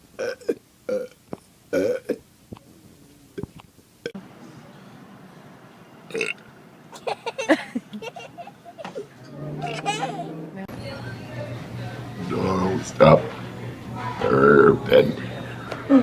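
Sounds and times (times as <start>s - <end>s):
loud burps: 0.2s - 2.2s, 6.1s - 6.4s, 9.2s - 10.6s.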